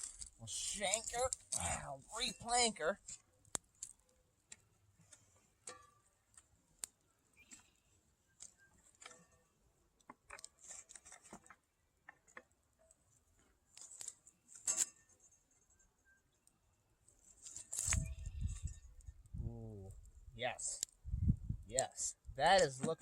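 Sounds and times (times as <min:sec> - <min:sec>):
stones clicking and knocking: 0:00.0 - 0:01.8, 0:03.1 - 0:04.6.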